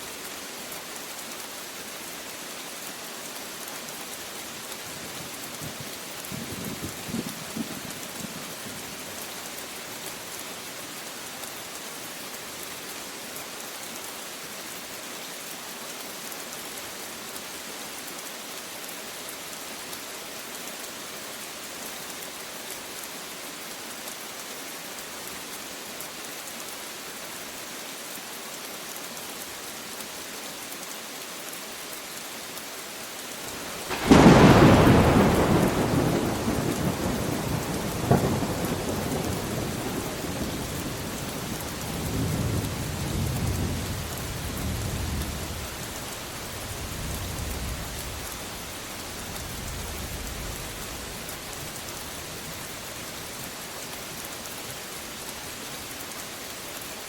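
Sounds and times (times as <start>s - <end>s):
steady rain falling: 0.0s - 57.0s
loud thunder crack: 33.8s - 39.9s
low thunder rumble: 33.8s - 41.5s.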